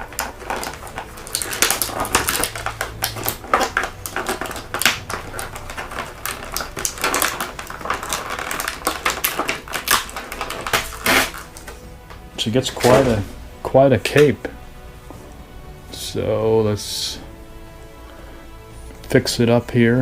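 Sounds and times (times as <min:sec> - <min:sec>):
plastic blister tray crinkling: 0:00.0 - 0:13.4.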